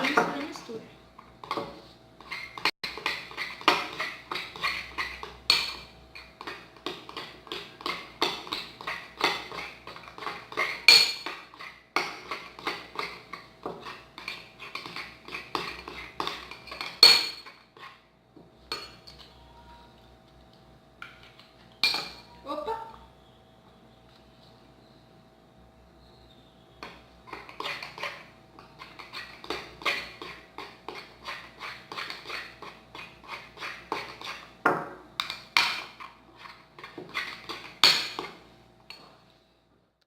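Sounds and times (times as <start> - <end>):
utensil stirring slime in pot: 0.0 - 20.0, 26.7 - 34.6, 35.2 - 38.5.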